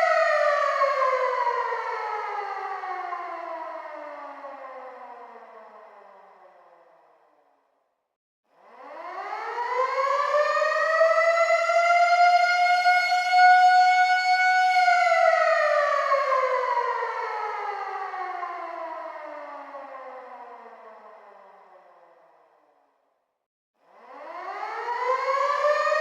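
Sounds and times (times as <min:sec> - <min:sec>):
air raid siren wailing: 0:00.0 - 0:05.3, 0:08.8 - 0:21.9, 0:24.1 - 0:26.0.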